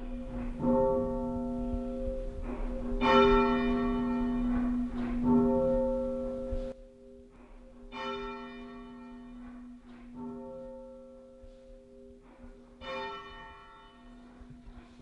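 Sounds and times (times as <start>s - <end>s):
church bell tolling: 0.0s - 15.0s.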